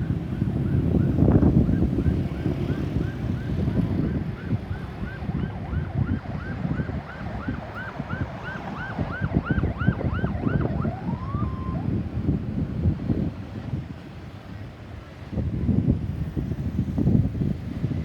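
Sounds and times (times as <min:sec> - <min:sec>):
traffic rumble: 0:00.0 - 0:18.0
wind on microphone: 0:00.0 - 0:18.0
ambulance siren yelping: 0:00.1 - 0:11.9.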